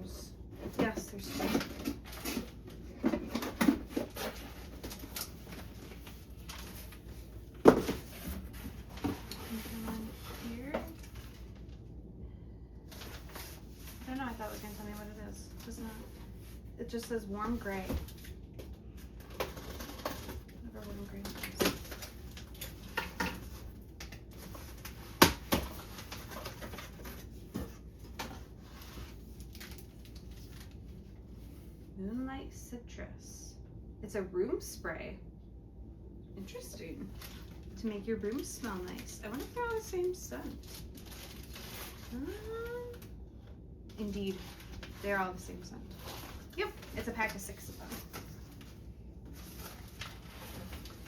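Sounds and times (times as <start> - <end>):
packaging rustling: 19.0 - 30.8, 37.1 - 43.1, 44.3 - 51.0.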